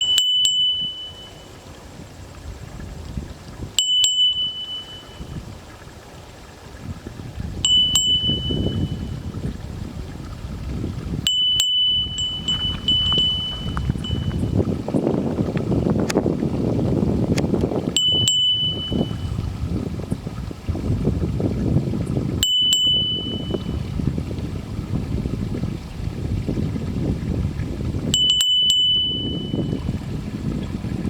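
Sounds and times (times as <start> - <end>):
small metal bell ringing: 0.0 - 1.5, 3.8 - 5.3, 7.6 - 9.2, 11.3 - 14.5, 18.0 - 19.3, 22.4 - 23.7, 28.2 - 29.8
wind rumble on microphone: 0.0 - 31.0.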